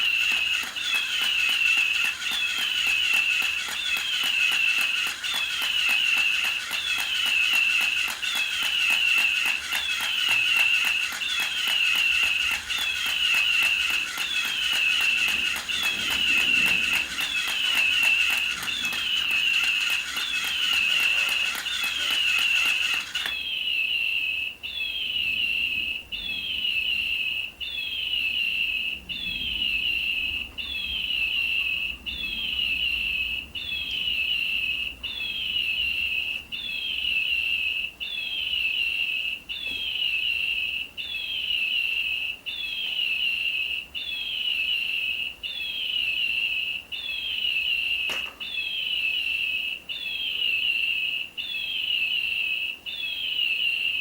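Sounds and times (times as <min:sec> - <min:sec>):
electronic toy bird chirping: 0:00.0 - 0:54.0
sharp click: 0:00.1 - 0:23.4.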